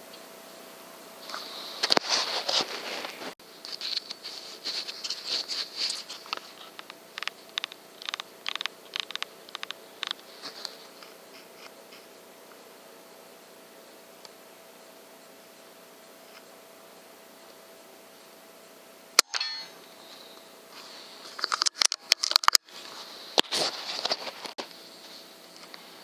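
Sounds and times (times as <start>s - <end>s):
faint steady hum: 0.0s - 26.0s
rats squeaking and scrabbling: 3.6s - 12.1s.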